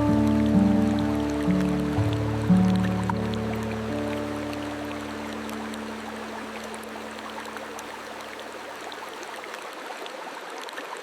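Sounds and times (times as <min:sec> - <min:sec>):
soft music pad: 0:00.0 - 0:08.5
running water rushing: 0:00.0 - 0:11.0.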